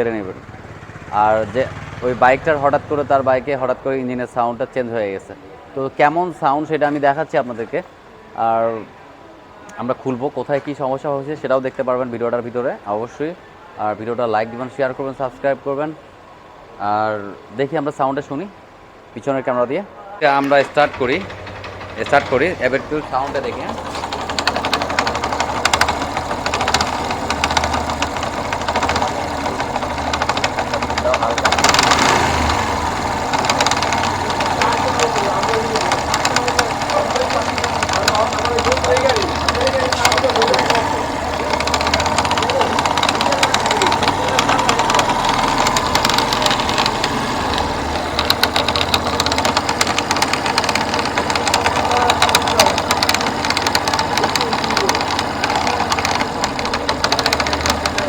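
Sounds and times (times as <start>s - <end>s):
motorcycle engine running: 0.0s - 3.8s, 20.4s - 58.0s
rapid engine knocking: 0.0s - 3.8s, 20.3s - 58.0s.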